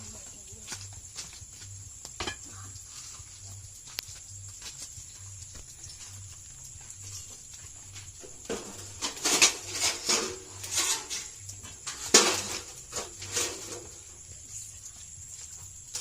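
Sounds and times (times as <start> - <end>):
sharp knocks and clatters: 8.1 - 14.0.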